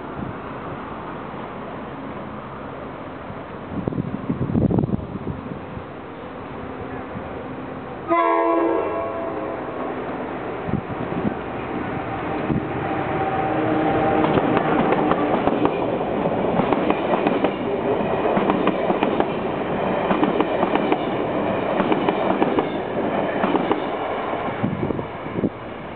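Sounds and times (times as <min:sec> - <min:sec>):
train wheels rumbling on rail: 0:00.0 - 0:25.9.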